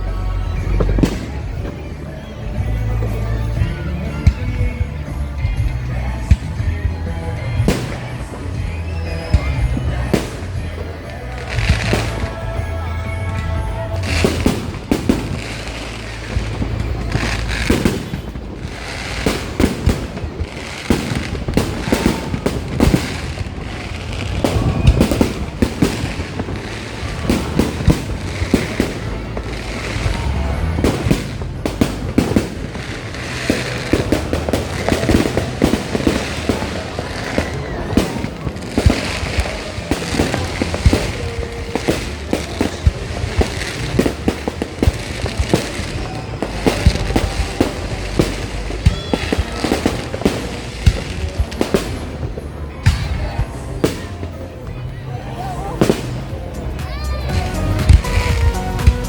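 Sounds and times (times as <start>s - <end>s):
fireworks bangs and crackles: 0.0s - 59.0s
music playing: 0.0s - 59.0s.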